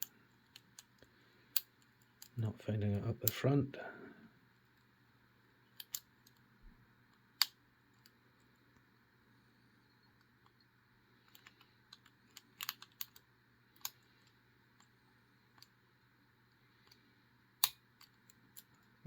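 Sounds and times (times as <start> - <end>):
lock pick clicking in padlock: 5.7 - 6.1.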